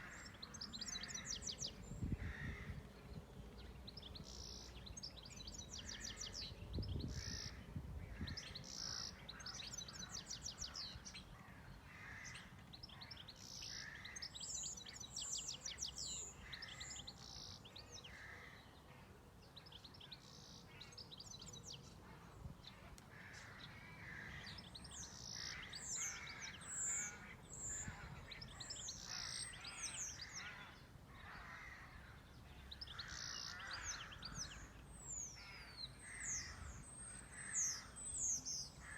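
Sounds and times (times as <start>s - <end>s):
rough low bird calls: 0.0s - 3.2s, 5.8s - 13.0s
birds chirping and trilling: 0.0s - 38.9s.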